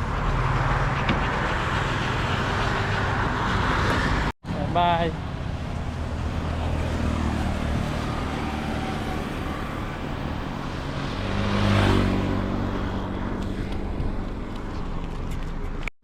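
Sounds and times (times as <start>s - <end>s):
traffic hum: 0.0s - 15.9s
vehicle passing close by: 5.2s - 15.8s.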